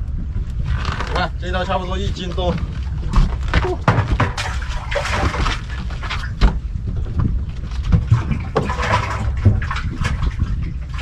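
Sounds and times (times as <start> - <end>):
low wind rumble: 0.0 - 11.0
water splashing and sloshing: 0.0 - 11.0.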